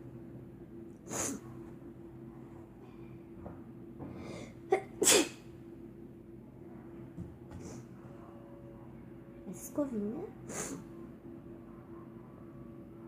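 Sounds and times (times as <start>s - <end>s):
girl sneezing: 4.7s - 5.4s.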